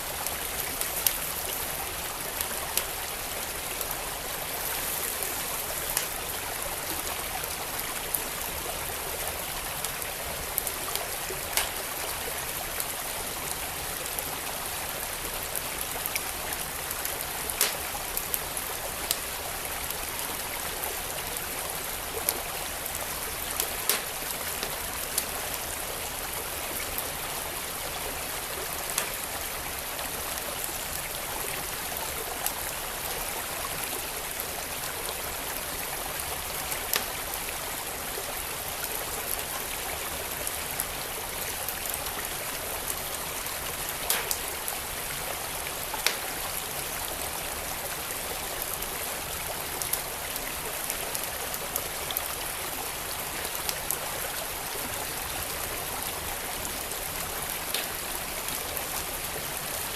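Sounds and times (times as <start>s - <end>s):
stream flowing: 0.0s - 59.9s
wood fire crackling: 0.1s - 7.1s, 10.0s - 12.1s, 16.1s - 20.0s, 21.9s - 26.4s, 28.8s - 29.4s, 36.4s - 37.5s, 43.8s - 46.8s, 56.8s - 58.1s.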